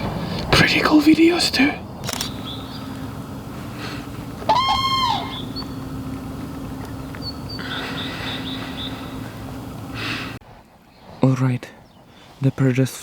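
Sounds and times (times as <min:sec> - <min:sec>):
crane call: 0:00.0 - 0:10.4
steady low hum: 0:00.0 - 0:11.0
small birds chirping: 0:00.0 - 0:13.0.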